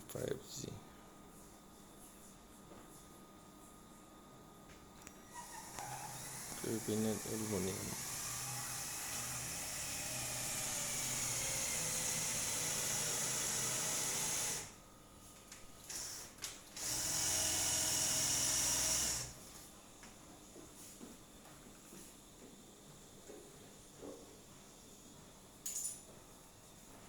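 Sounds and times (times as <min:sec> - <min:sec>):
handheld power tool running: 0:05.3 - 0:14.7, 0:15.8 - 0:19.4.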